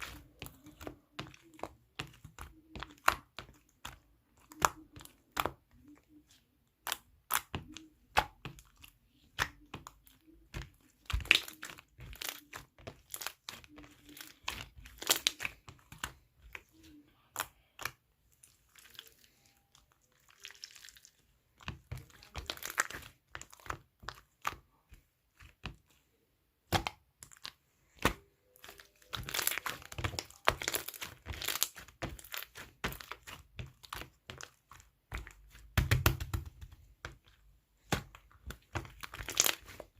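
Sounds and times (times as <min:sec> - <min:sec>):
slime squished by hand: 0:06.8 - 0:25.9, 0:26.6 - 0:37.2, 0:37.8 - 0:39.9.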